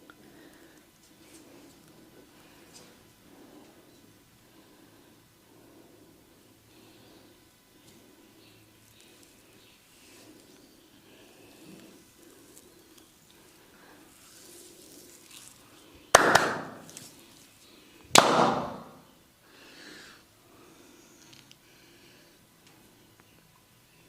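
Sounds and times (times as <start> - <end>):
hand slaps on skin: 16.2 - 17.0, 18.2 - 18.9.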